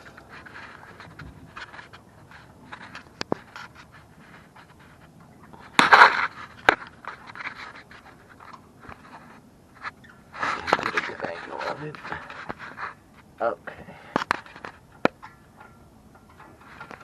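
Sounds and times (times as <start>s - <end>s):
clicks and rustling: 0.0s - 13.3s, 14.1s - 17.0s.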